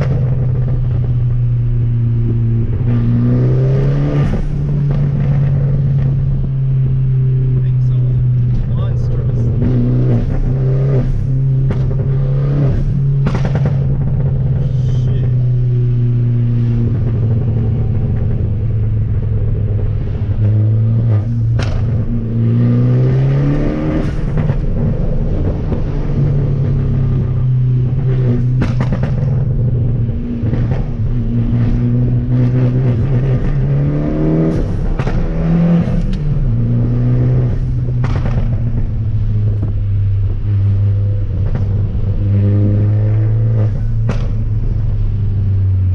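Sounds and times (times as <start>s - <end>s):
car engine accelerating: 0.0s - 45.9s.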